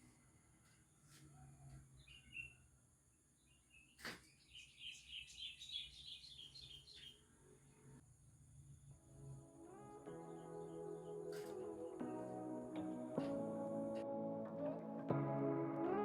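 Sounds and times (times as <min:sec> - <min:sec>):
faint bird chirping: 0:00.6 - 0:08.0.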